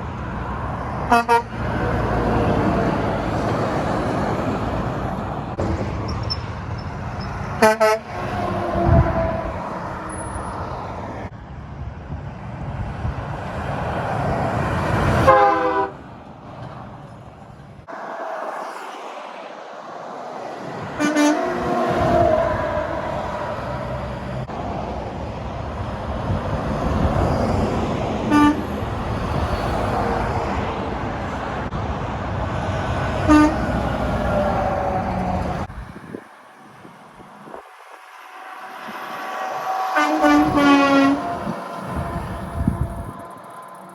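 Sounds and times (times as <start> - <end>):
trucks and traffic passing: 0.0 - 43.9
truck horn blasts: 1.1 - 1.8, 7.2 - 10.4, 15.2 - 16.0, 21.0 - 22.5, 28.3 - 28.9, 33.3 - 34.0, 39.8 - 43.4.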